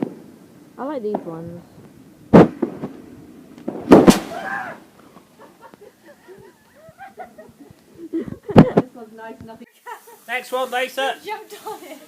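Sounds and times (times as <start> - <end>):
fireworks bangs: 0.0 - 7.8.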